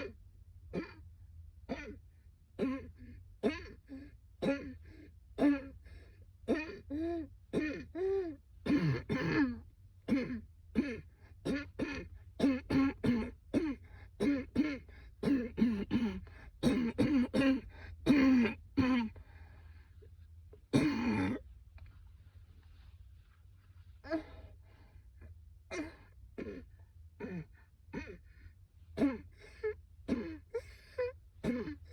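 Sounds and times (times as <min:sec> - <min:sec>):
woman coughing: 0:00.0 - 0:01.0, 0:01.7 - 0:02.0, 0:02.6 - 0:04.8, 0:05.4 - 0:05.8, 0:06.5 - 0:08.0, 0:08.6 - 0:19.2, 0:20.7 - 0:21.4, 0:25.7 - 0:28.2, 0:29.0 - 0:29.4, 0:30.1 - 0:31.9
throat clearing: 0:02.6 - 0:04.8, 0:08.7 - 0:19.2, 0:20.7 - 0:21.5, 0:25.7 - 0:28.3, 0:30.1 - 0:30.6, 0:31.4 - 0:31.9.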